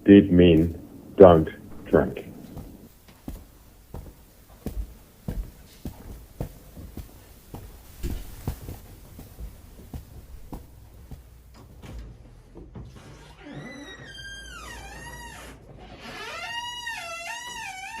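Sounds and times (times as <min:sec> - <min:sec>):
low steady hum: 0:00.0 - 0:12.8.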